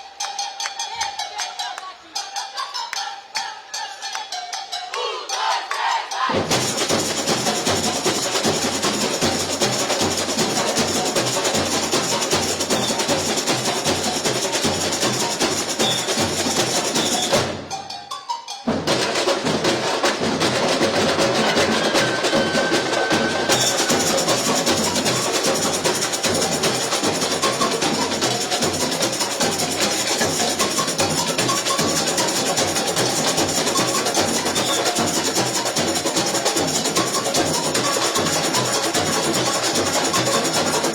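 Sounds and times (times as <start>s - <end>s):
samba drums and percussion: 0.0s - 40.9s.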